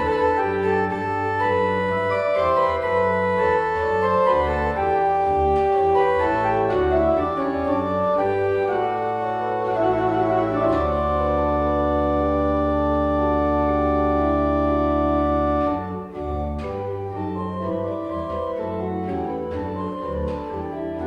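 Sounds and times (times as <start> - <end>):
organ playing chords: 0.0 - 21.0.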